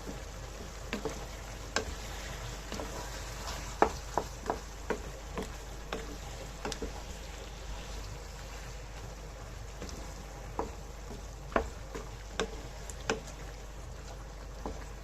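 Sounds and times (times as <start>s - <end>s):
food frying in a pan: 0.0s - 15.0s
utensil scraping a pan: 1.0s - 8.8s.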